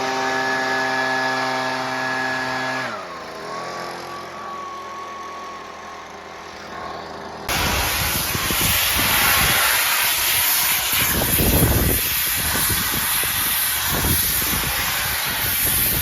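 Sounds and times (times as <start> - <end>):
high-pressure water jet hissing: 0.0 - 3.0, 7.5 - 16.0
pressure washer engine: 0.0 - 16.0.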